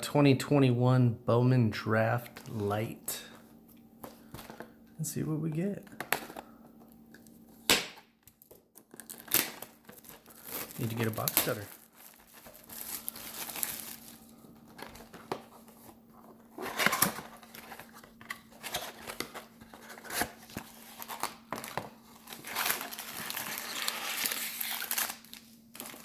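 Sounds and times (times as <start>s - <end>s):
faint steady hum: 0.0s - 26.0s
plastic wrap crinkling and tearing: 8.3s - 26.0s.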